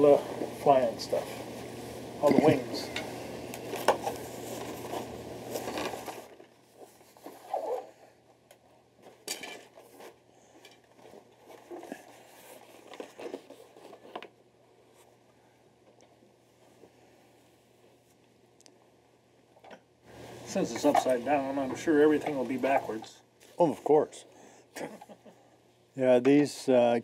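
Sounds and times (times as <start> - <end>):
rustling packaging: 3.6 - 8.0, 8.7 - 14.3.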